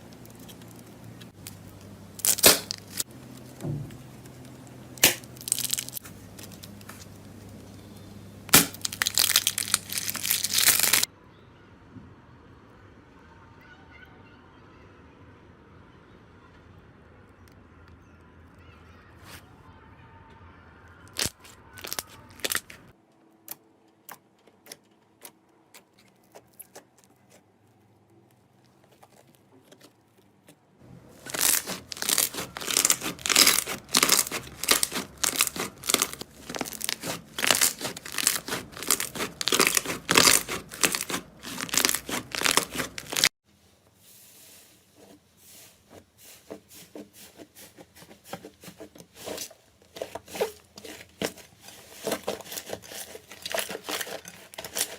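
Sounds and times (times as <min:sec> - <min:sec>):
slime crackling and popping: 0:00.0 - 0:11.1, 0:21.0 - 0:22.9, 0:31.1 - 0:43.3, 0:52.0 - 0:54.9.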